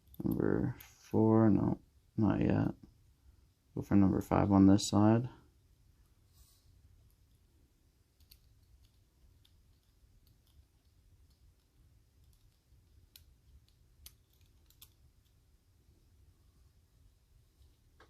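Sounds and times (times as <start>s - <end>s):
small metal lock parts clicking: 12.2s - 15.3s.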